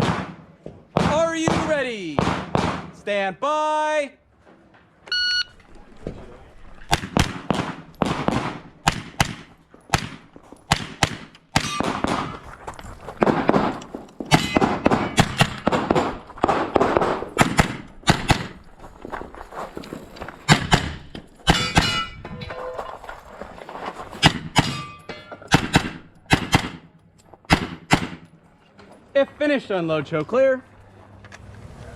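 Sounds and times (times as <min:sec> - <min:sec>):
gunshots with echo: 0:00.0 - 0:03.0, 0:06.9 - 0:12.4, 0:13.2 - 0:18.6.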